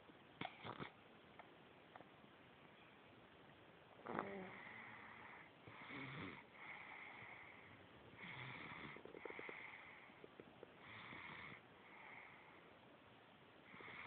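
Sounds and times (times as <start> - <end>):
baby snoring softly: 4.0 - 12.6.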